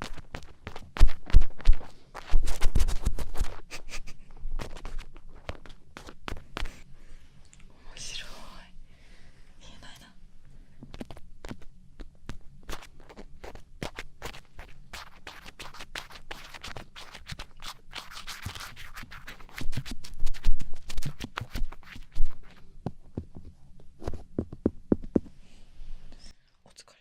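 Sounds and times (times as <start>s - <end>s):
ear pick scratching microphone: 0.0s - 6.8s, 10.9s - 25.3s.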